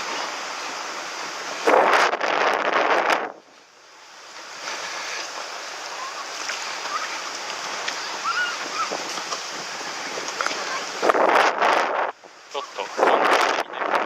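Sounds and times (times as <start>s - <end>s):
surf washing on shore: 0.0s - 14.0s.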